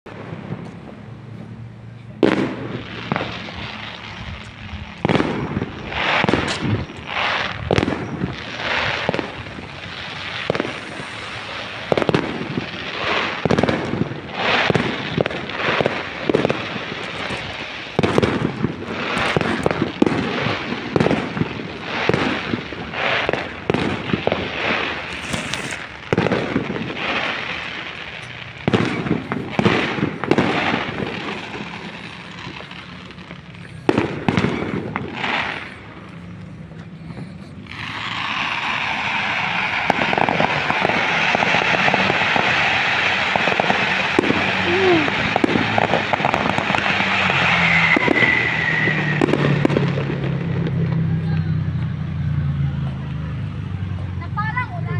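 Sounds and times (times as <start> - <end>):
fireworks bangs and crackling: 0.1 - 54.9.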